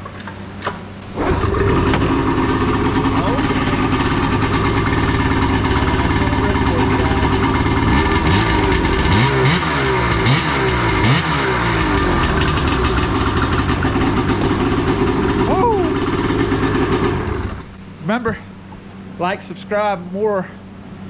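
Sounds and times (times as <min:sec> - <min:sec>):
two-stroke engine revving: 0:01.2 - 0:17.8.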